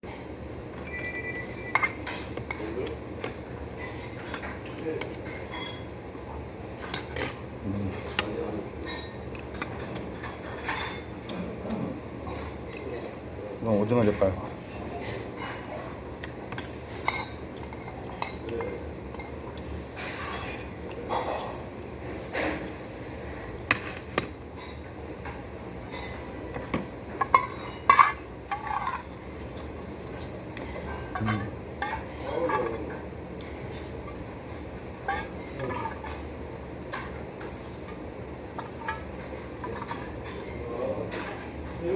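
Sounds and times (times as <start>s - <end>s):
utensils clinking against dishes: 0.8s - 6.0s, 6.8s - 11.4s, 14.0s - 22.8s, 24.6s - 36.2s, 38.6s - 41.8s
cutlery clinking on dishes: 0.9s - 5.9s, 6.8s - 11.1s.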